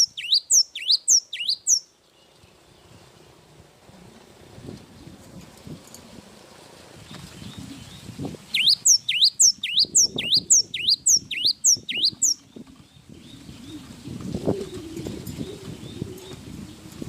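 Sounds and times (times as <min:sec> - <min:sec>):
bird whistling song: 0:00.0 - 0:01.9, 0:07.4 - 0:13.9.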